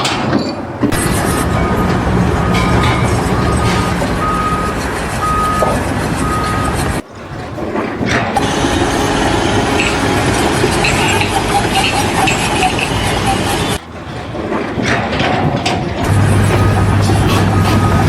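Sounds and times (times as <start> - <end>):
heavy vehicle engine running: 0.0 - 18.0
noisy machine sound: 0.0 - 18.0
reversing alarm beeps: 1.0 - 7.0, 8.4 - 13.8, 16.0 - 18.0.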